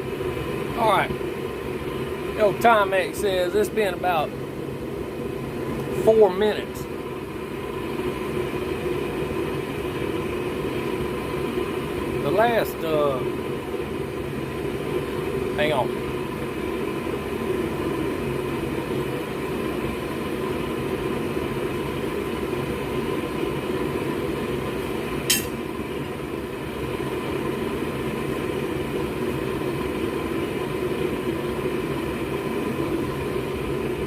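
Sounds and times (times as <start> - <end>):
forge burner rushing: 0.0 - 34.0
sharp click: 25.3 - 25.6.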